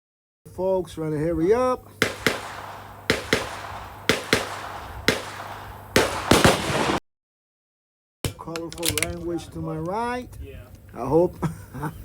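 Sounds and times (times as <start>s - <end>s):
gunshots: 2.0s - 7.0s.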